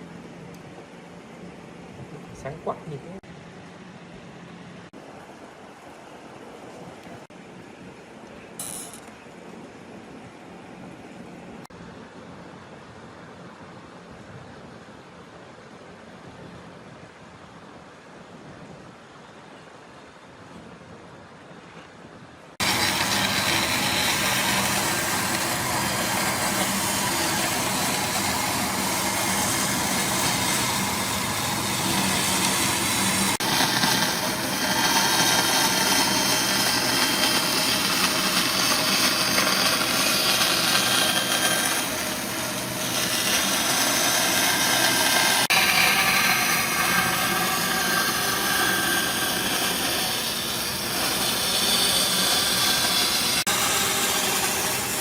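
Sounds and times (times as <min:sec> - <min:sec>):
power tool running with hiss: 0:22.6 - 0:55.0.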